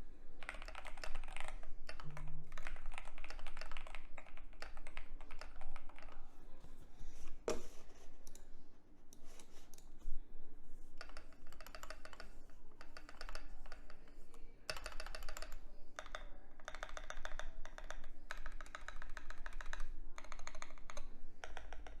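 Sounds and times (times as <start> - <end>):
keyboard typing: 0.4 - 6.2, 11.0 - 22.0.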